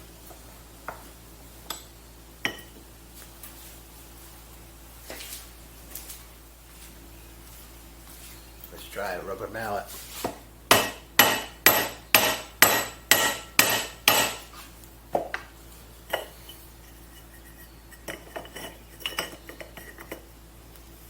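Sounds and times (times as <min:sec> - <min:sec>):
rubber mallet striking metal pump: 0:10.7 - 0:14.5.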